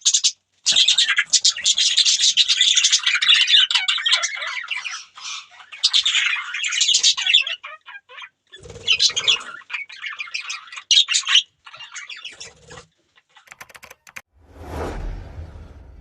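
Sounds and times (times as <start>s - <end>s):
budgerigars chirping and chattering: 0.0s - 13.4s
sharp clicks: 13.5s - 14.3s
rushing noise: 14.4s - 16.0s.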